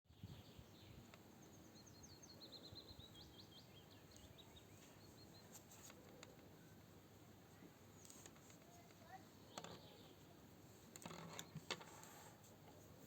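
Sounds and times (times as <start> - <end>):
small bird chirping: 0.1 - 6.8, 7.5 - 10.4.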